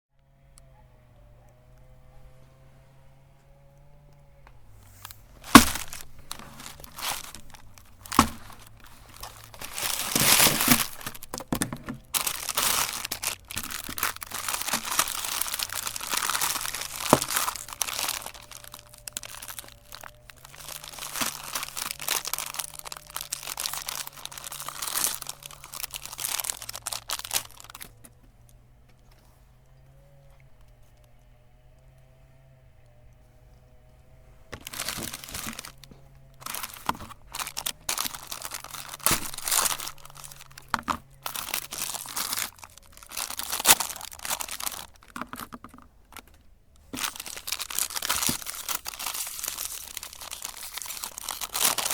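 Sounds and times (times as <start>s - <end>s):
sharp cracks: 4.9s - 27.9s, 34.6s - 45.6s
meat grinder crushing ice cream: 5.0s - 28.0s, 34.6s - 45.6s, 46.9s - 51.9s.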